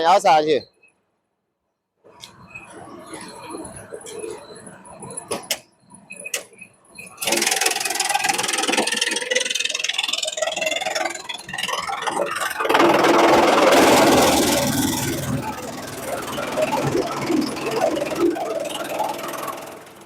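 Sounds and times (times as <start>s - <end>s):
shredder machine running: 7.2s - 20.0s.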